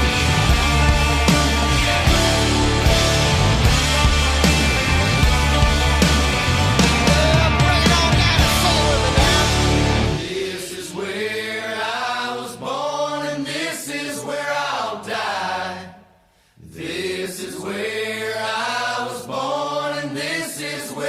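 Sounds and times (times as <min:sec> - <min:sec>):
voices singing long notes: 0:00.0 - 0:15.9.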